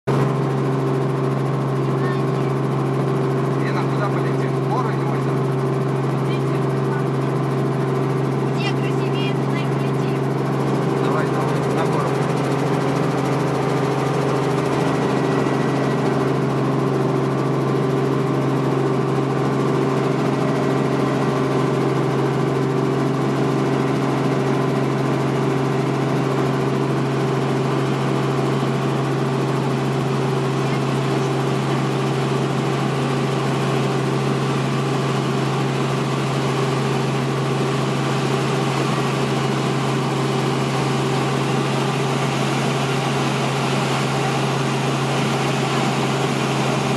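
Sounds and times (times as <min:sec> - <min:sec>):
helicopter engine and rotor drone: 0:00.0 - 0:46.9.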